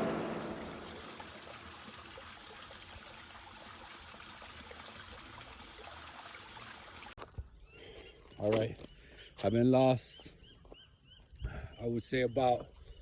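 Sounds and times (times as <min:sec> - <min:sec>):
faint running water: 0:00.0 - 0:07.2.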